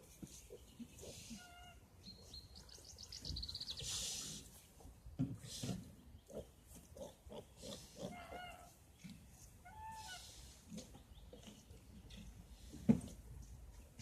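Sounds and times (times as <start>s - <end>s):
high-pitched piglet calls: 1.0s - 1.8s, 7.0s - 8.8s, 9.6s - 10.4s
piglets grunting: 6.3s - 8.8s.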